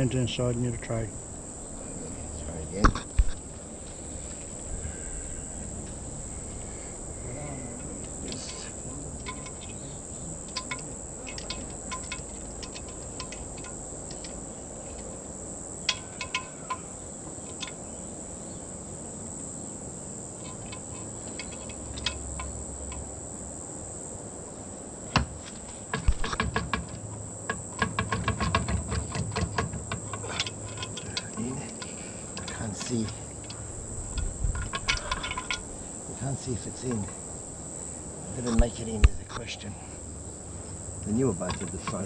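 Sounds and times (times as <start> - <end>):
insects trilling: 0.0 - 42.0
metal parts clicking and knocking: 9.2 - 9.8, 10.4 - 15.2, 15.8 - 17.8, 20.4 - 23.0, 25.5 - 35.8, 41.2 - 42.0.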